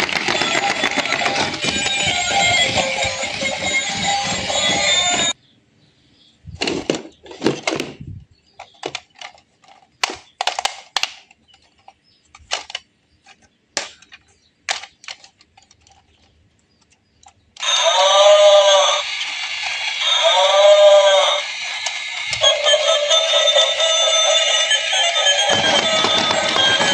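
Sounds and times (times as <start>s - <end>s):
music: 0.1s - 5.4s.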